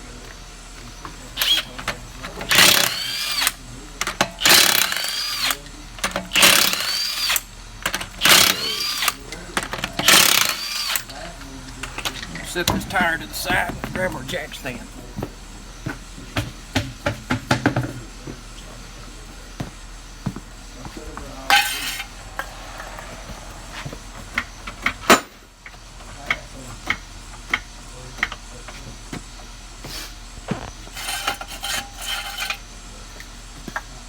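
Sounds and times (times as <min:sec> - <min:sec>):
metal tools clinking: 0:21.5 - 0:23.1.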